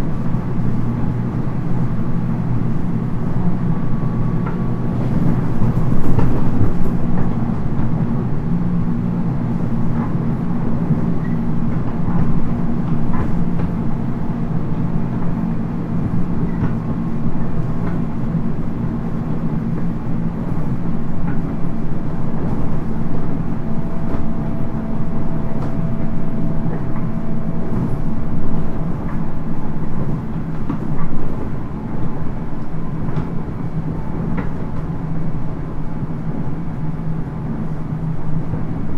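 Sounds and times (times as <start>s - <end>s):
train wheels rumbling on rail: 0.0s - 38.9s
clicks and knocks from track: 4.4s - 8.0s, 25.4s - 34.9s.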